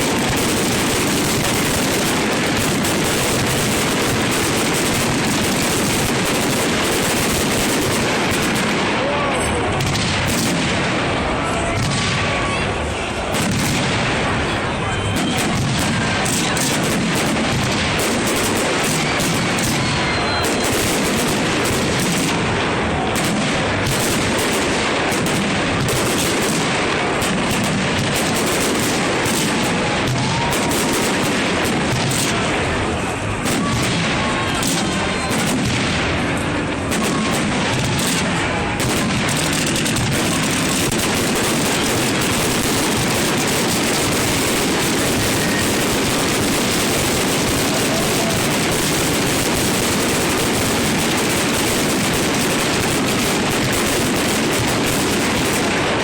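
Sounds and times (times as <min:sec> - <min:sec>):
fireworks bangs and crackling: 0:00.0 - 0:56.0.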